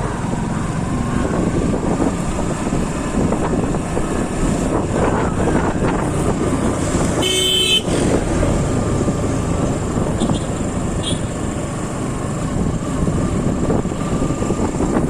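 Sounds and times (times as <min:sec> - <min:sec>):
motorcycle wind and road noise: 0:00.0 - 0:15.0
vehicle horn honk: 0:07.2 - 0:07.9, 0:10.2 - 0:11.3.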